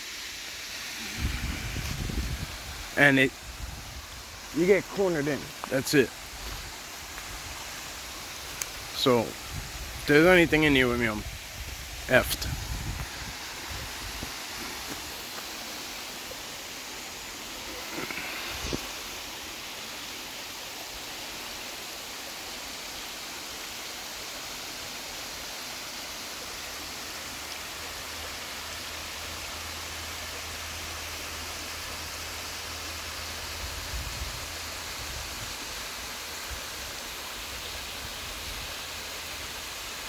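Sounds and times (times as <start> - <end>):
waterfall rushing: 0.0 - 31.3.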